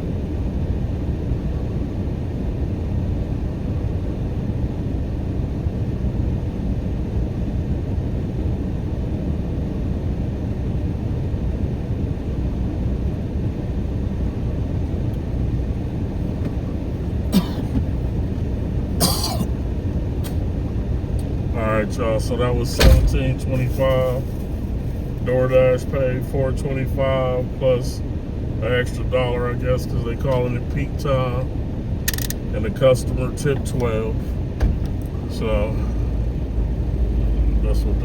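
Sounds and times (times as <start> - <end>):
car engine idling: 14.2 - 38.0.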